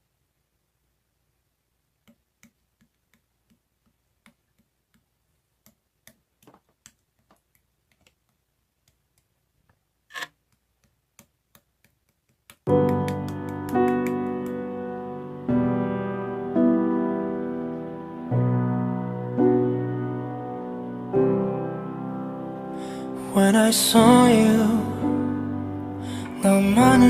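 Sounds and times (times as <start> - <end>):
piano music: 12.7 - 27.0.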